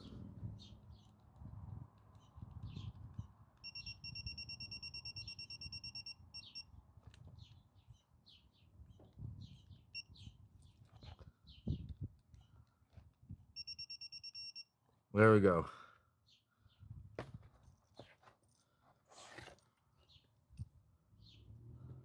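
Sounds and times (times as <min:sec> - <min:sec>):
torque screwdriver beeping: 0:03.1 - 0:06.7, 0:10.0 - 0:10.2, 0:13.6 - 0:14.7.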